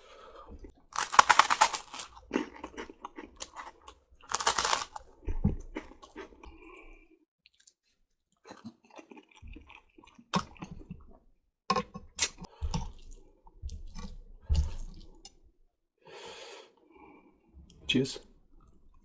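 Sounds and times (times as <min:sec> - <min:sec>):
chewing and slurping spaghetti: 0:00.4 - 0:15.4.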